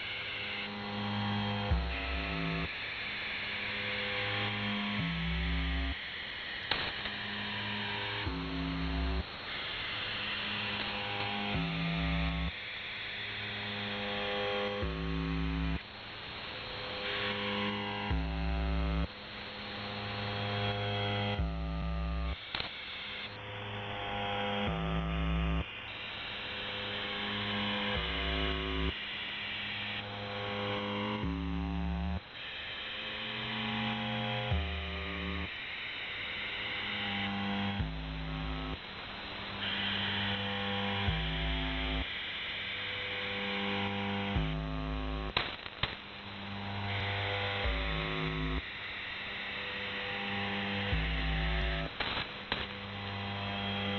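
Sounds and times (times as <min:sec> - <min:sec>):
radio static hiss: 0:44.9 - 0:50.2, 0:51.0 - 0:53.4.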